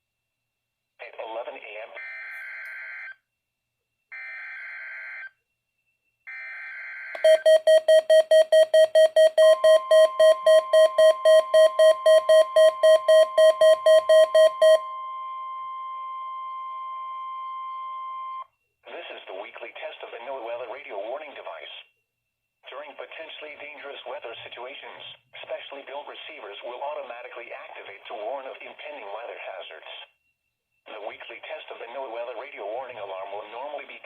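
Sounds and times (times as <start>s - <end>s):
steady warning alarm tone: 6.3s - 18.4s
rapid electronic beeping: 7.2s - 16.0s.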